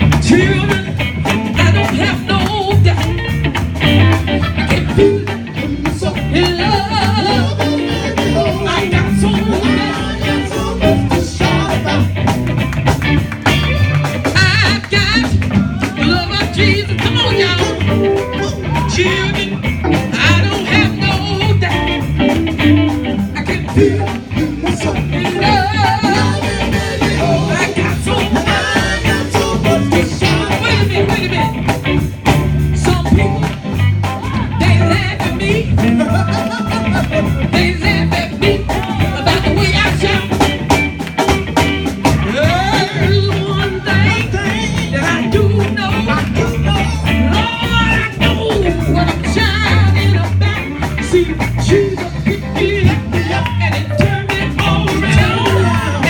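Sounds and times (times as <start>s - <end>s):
gospel band and singers: 0.0s - 56.0s.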